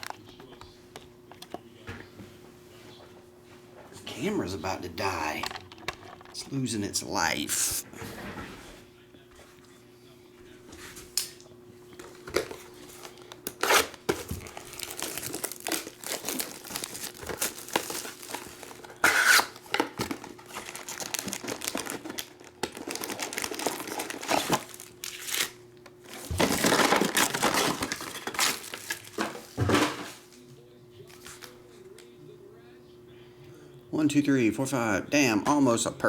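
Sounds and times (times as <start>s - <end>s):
wrappers tearing and crinkling: 12.4s - 29.6s.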